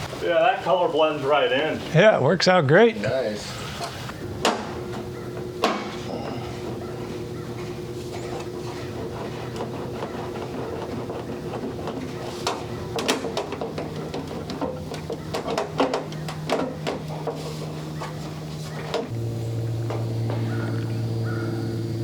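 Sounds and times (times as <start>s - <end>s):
motor humming: 3.0s - 22.0s
metal clicks and knocks: 7.6s - 17.4s.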